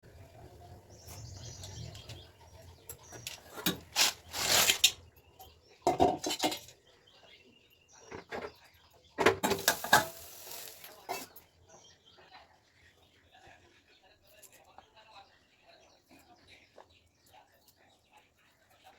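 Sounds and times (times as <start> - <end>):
dishes and utensils clattering: 2.9 - 5.0, 5.8 - 6.8, 9.2 - 11.4.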